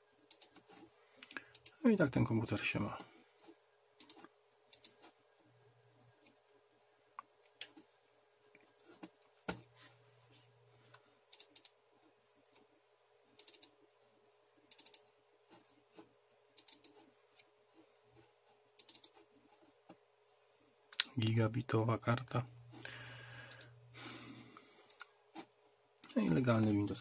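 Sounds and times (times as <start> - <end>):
computer mouse clicking: 0.2 - 0.6, 4.0 - 5.1, 11.3 - 11.8, 13.4 - 13.8, 14.7 - 15.1, 16.5 - 17.5, 18.7 - 19.2, 23.5 - 23.7, 24.8 - 25.1, 26.0 - 26.2.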